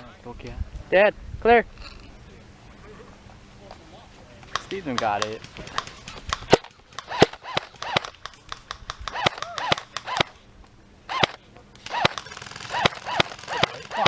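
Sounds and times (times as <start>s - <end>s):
airsoft gun shots: 4.5s - 10.4s, 11.1s - 14.0s.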